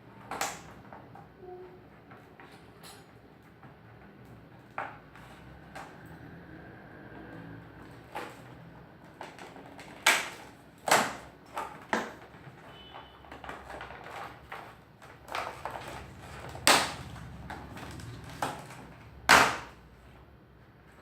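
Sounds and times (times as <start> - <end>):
clicks and knocks of handling: 7.8 - 19.8.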